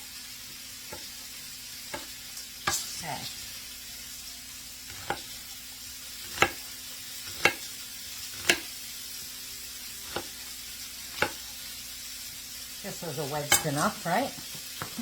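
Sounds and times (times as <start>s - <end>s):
chicken sizzling in a pan: 0.0s - 15.0s
knife chopping vegetables: 0.9s - 3.0s, 4.8s - 5.5s, 6.2s - 8.8s, 10.0s - 11.6s.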